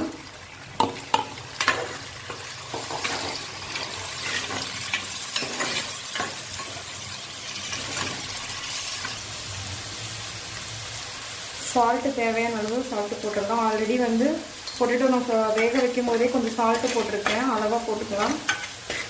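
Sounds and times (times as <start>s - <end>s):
food sizzling in hot oil: 0.0s - 19.0s
spoon stirring and scraping pan: 0.8s - 9.2s, 14.6s - 19.0s.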